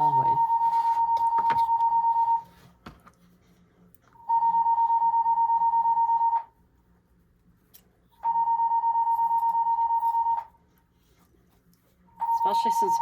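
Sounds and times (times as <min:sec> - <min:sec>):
fluttering high-pitched alarm tone: 0:00.0 - 0:02.5, 0:04.2 - 0:06.5, 0:08.2 - 0:10.5, 0:12.2 - 0:13.0.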